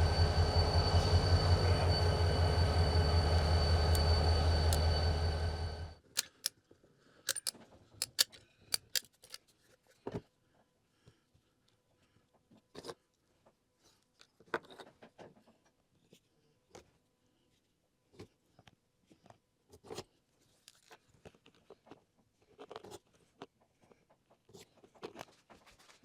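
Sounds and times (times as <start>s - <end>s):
model locomotive diesel engine: 0.0s - 6.5s.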